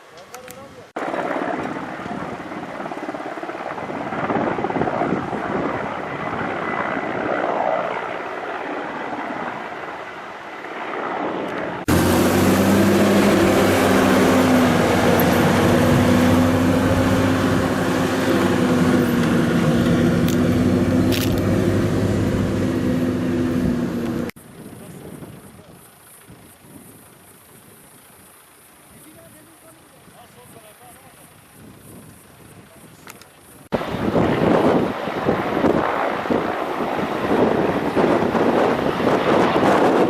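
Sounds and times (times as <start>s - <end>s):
rough outdoor noise: 0.0s - 40.0s
engine running: 11.6s - 24.4s.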